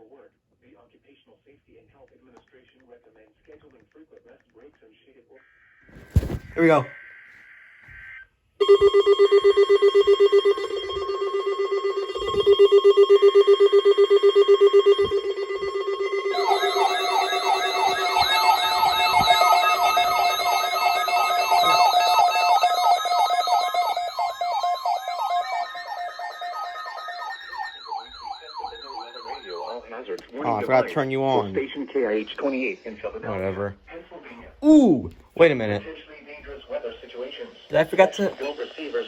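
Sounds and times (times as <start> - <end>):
warbling siren-like alarm tones: 5.8 - 30.0
loud pulsing beep: 8.6 - 30.7.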